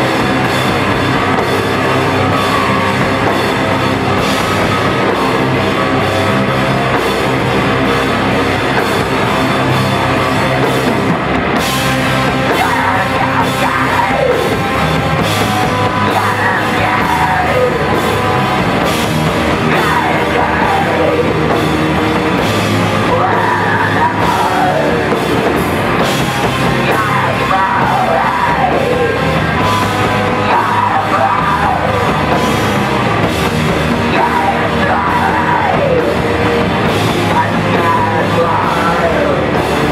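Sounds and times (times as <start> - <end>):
punk band playing live: 0.0 - 39.9
person yelling vocals: 12.4 - 14.5.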